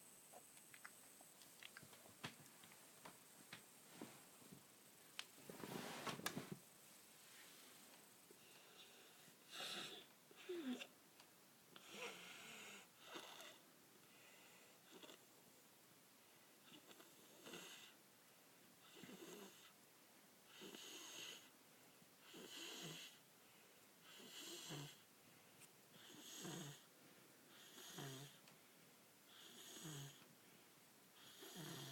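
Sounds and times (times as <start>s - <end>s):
child snoring faintly: 8.4s - 10.9s, 11.8s - 13.6s, 18.8s - 19.8s, 22.2s - 23.2s, 24.0s - 25.0s, 25.9s - 26.9s, 27.5s - 28.4s, 29.3s - 30.2s, 31.2s - 31.9s.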